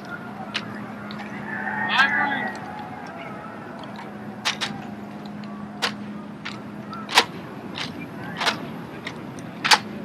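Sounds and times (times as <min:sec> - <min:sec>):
rifles slapping and clacking: 0:03.7 - 0:10.0.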